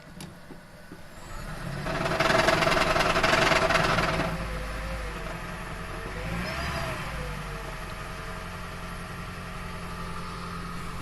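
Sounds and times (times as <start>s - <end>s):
car engine running: 0.0s - 11.0s
rapid knocking rattle: 1.8s - 4.4s.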